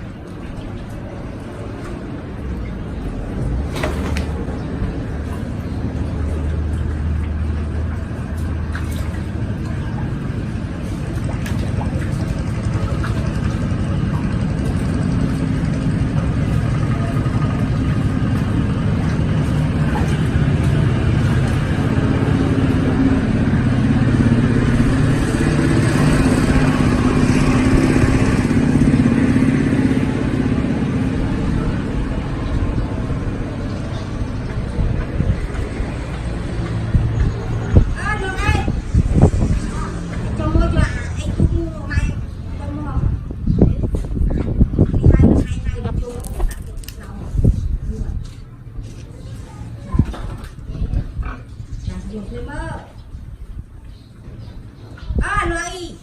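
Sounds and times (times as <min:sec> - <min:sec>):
motor running steadily: 0:04.5 - 0:43.7.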